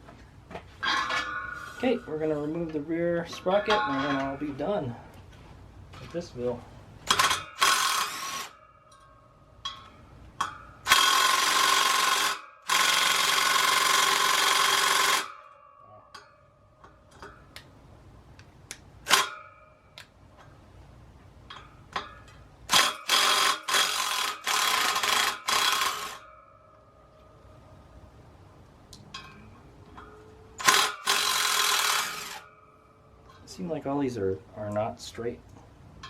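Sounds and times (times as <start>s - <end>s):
power tool spinning bolts: 7.0s - 16.3s, 19.0s - 19.6s, 21.5s - 26.6s, 30.0s - 32.7s.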